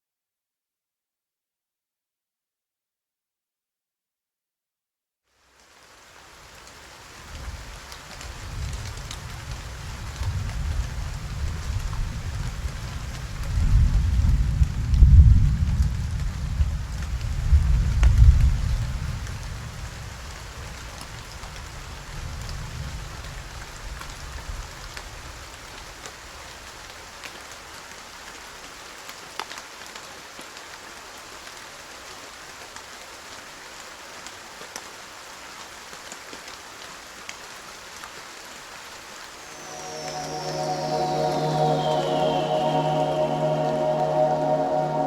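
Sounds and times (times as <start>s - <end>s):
steady rain: 5.3s - 45.0s.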